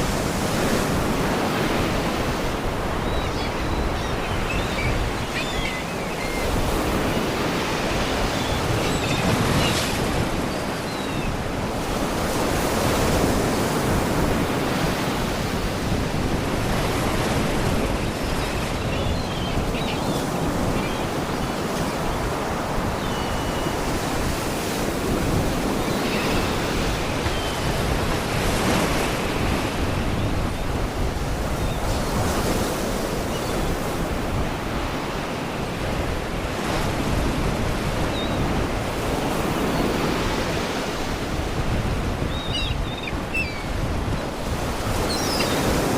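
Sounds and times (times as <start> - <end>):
faint seagull cries: 42.2 - 43.8, 45.0 - 45.7.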